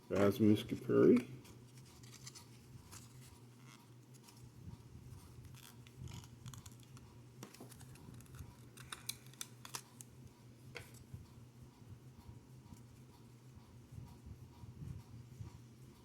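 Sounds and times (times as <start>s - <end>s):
low steady hum: 0.0s - 16.0s
cards and packaging handled: 0.1s - 3.4s, 5.4s - 10.1s.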